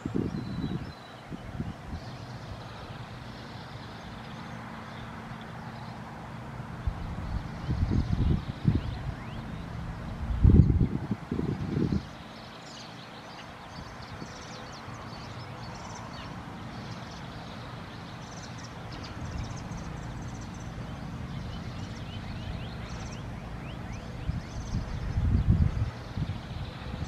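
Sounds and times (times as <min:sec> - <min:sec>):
wind rumbling on microphone: 0:00.0 - 0:04.0, 0:06.2 - 0:12.5, 0:18.5 - 0:27.0
small birds chirping: 0:00.0 - 0:27.0.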